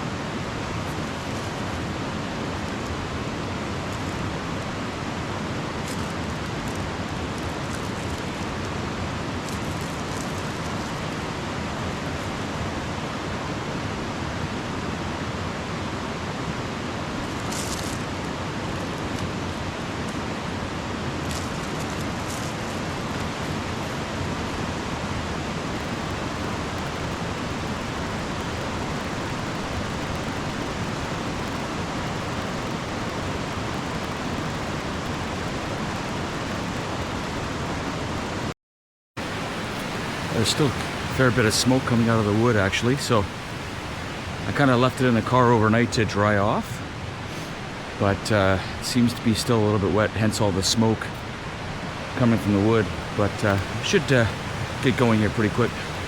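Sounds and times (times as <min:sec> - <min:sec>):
river water rushing: 0:18.0 - 0:38.5, 0:39.2 - 0:49.3, 0:50.4 - 0:56.0.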